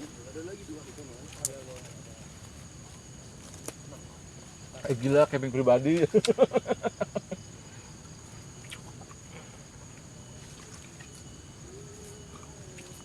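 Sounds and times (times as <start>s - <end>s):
insect drone: 0.0s - 13.0s
person laughing: 6.2s - 7.4s.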